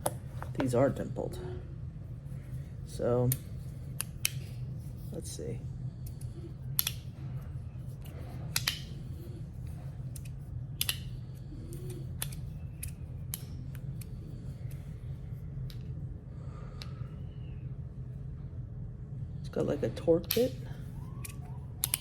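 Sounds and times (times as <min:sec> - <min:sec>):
steady low hum: 0:00.0 - 0:22.0
fidget slider clicks and snaps: 0:03.3 - 0:04.6, 0:06.0 - 0:07.1, 0:08.0 - 0:09.2, 0:10.1 - 0:14.8, 0:21.2 - 0:22.0.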